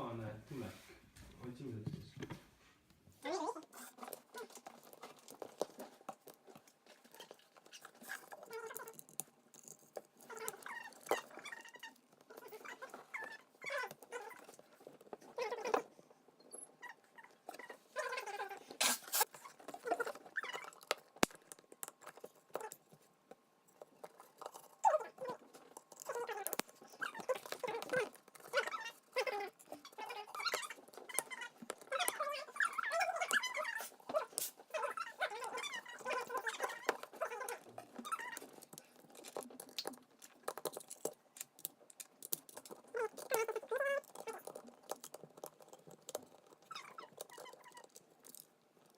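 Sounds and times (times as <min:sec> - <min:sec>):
plastic pieces clicking and rattling: 0:35.8 - 0:48.9.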